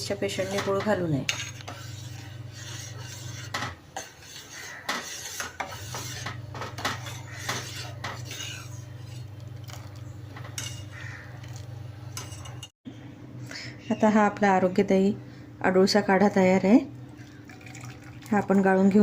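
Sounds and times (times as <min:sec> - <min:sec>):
metal spoon stirring in a pot: 0:00.0 - 0:12.7
steady low hum: 0:00.0 - 0:19.0.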